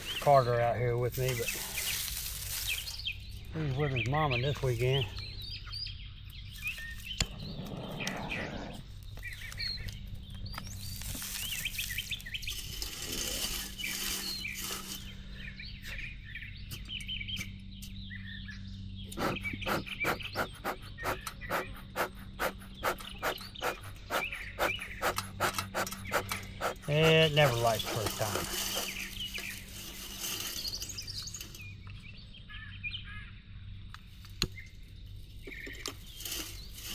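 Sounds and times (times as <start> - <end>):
small birds chirping: 0.0 - 36.9
bellows puffing: 19.2 - 31.4.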